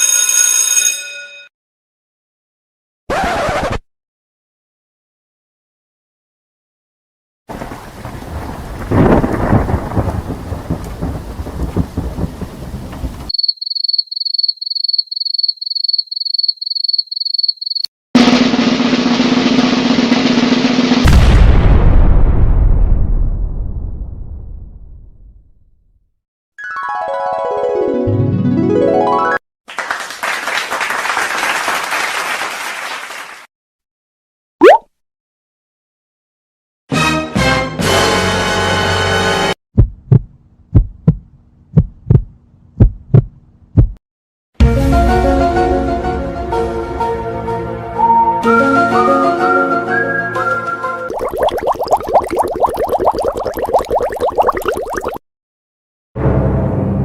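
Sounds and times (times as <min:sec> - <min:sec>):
rumbling thunder-like noise: 0:07.5 - 0:13.3
crowd clapping: 0:29.7 - 0:33.5.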